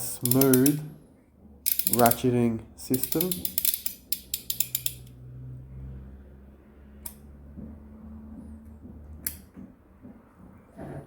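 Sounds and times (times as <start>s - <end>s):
torque wrench ratchet clicking: 0.0s - 0.8s, 1.6s - 2.3s, 2.9s - 5.1s.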